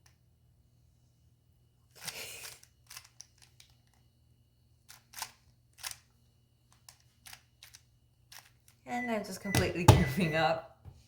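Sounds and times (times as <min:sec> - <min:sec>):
puzzle cube turning clicks: 0:02.0 - 0:04.0, 0:04.9 - 0:06.1, 0:06.7 - 0:08.6.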